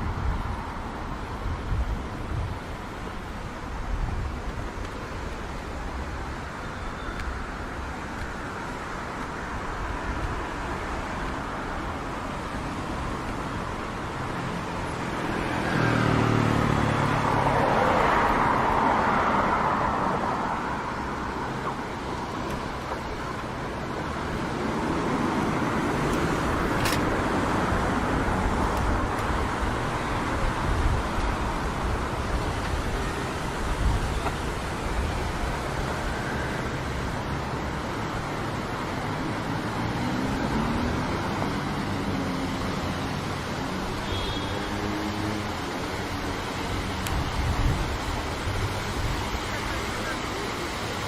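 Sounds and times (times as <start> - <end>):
street traffic noise: 0.0 - 51.0
motor vehicle passing: 14.2 - 21.6.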